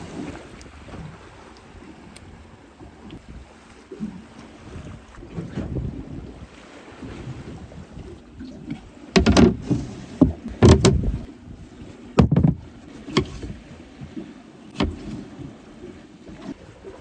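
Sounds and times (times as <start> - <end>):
sharp knocks and clatters: 9.2 - 11.1, 12.2 - 12.6.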